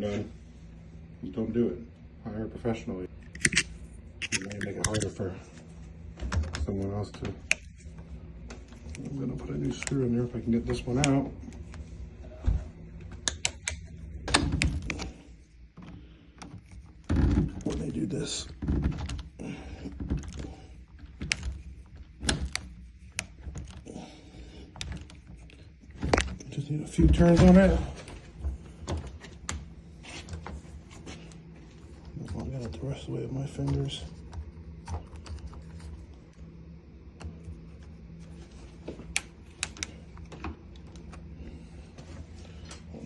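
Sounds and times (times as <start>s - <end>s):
steady low hum: 0.0s - 43.0s.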